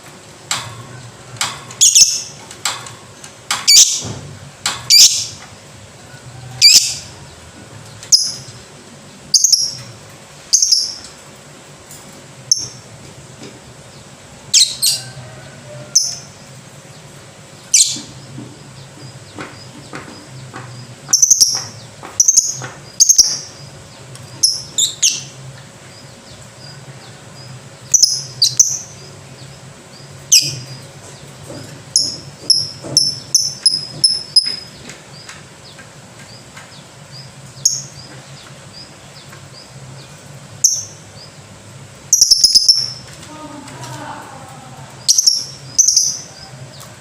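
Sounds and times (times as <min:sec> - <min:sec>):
lovebird chirping: 0:01.8 - 0:02.3, 0:09.3 - 0:09.8, 0:27.4 - 0:29.0, 0:42.1 - 0:43.0, 0:45.0 - 0:46.5.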